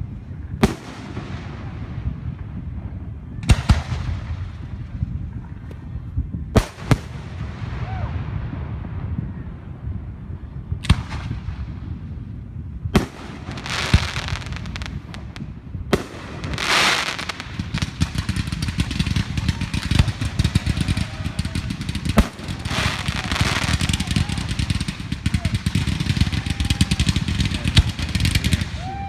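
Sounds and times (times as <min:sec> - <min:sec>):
firework bangs: 0:00.6 - 0:10.1, 0:10.7 - 0:29.0
firework crackling: 0:10.8 - 0:29.0.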